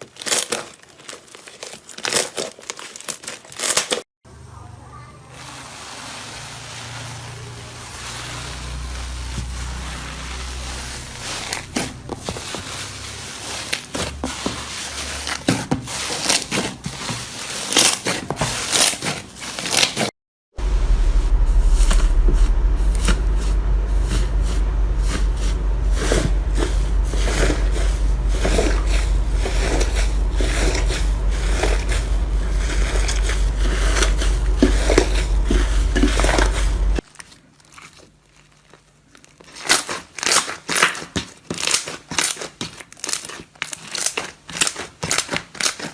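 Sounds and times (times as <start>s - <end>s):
steady low hum: 20.6s - 37.0s
slime crackling and popping: 25.9s - 45.9s.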